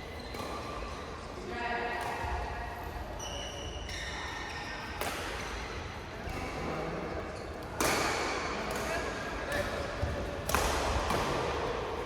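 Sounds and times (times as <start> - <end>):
shoes squeaking on court floor: 0.0 - 0.9, 3.2 - 5.8.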